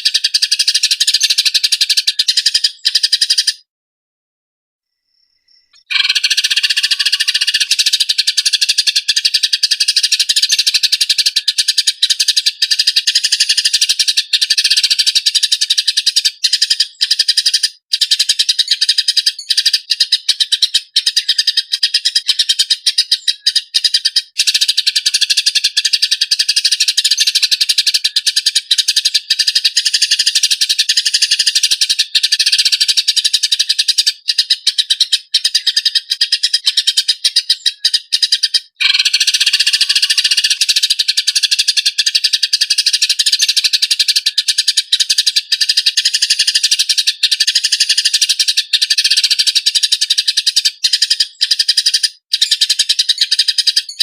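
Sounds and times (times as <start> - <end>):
sparrows chirping harshly: 0.0 - 3.7, 4.9 - 54.0.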